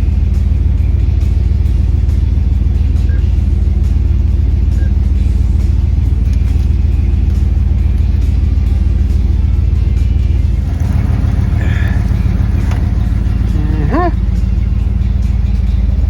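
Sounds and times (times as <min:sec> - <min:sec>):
car engine droning: 0:07.0 - 0:16.0.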